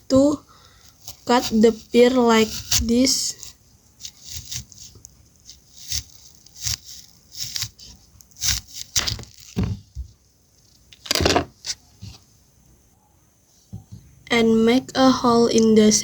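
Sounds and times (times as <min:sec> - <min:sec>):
knife cutting through pear: 0:00.9 - 0:10.1.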